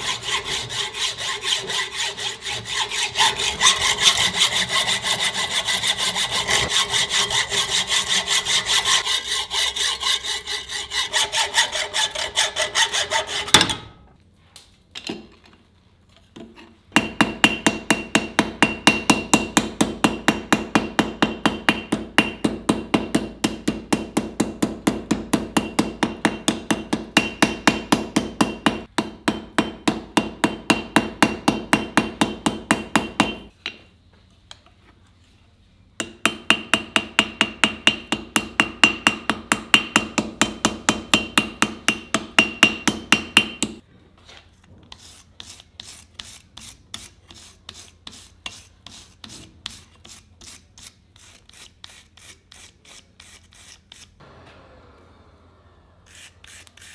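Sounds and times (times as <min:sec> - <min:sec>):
file strokes on ringing steel: 0:00.0 - 0:13.8.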